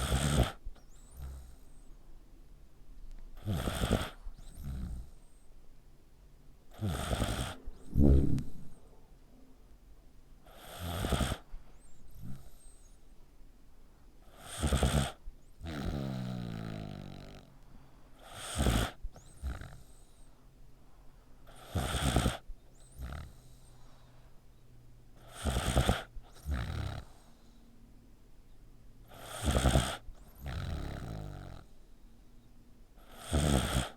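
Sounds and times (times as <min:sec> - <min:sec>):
pet snorting: 0:00.0 - 0:01.8, 0:03.4 - 0:05.3, 0:06.7 - 0:08.8, 0:10.5 - 0:11.5, 0:14.3 - 0:17.5, 0:18.2 - 0:20.3, 0:21.5 - 0:23.6, 0:25.2 - 0:27.3, 0:29.1 - 0:31.7, 0:33.0 - 0:33.9
pet snoring: 0:00.0 - 0:01.9, 0:03.4 - 0:05.5, 0:06.7 - 0:08.8, 0:10.4 - 0:12.9, 0:14.2 - 0:17.5, 0:18.2 - 0:20.4, 0:21.5 - 0:24.1, 0:25.2 - 0:27.6, 0:29.0 - 0:31.9, 0:33.0 - 0:33.9.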